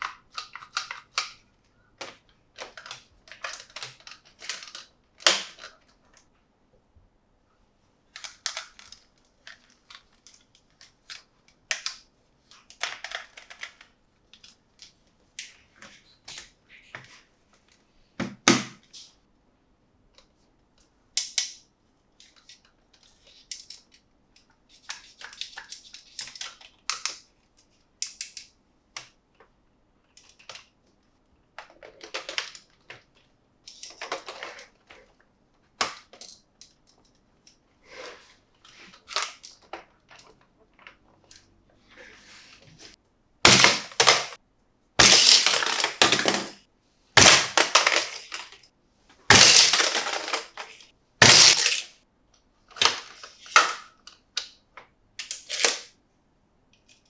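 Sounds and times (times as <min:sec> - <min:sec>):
packaging crinkling and rustling: 0:45.0 - 0:46.6, 0:49.3 - 0:51.9.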